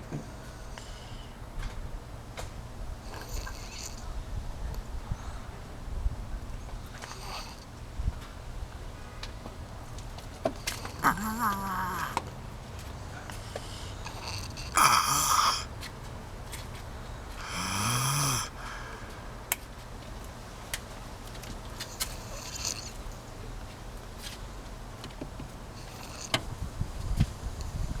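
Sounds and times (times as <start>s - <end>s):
rasping snores: 3.1s - 4.1s, 7.0s - 7.7s, 10.8s - 12.3s, 13.3s - 15.7s, 17.4s - 18.9s, 21.9s - 23.0s, 25.8s - 26.5s.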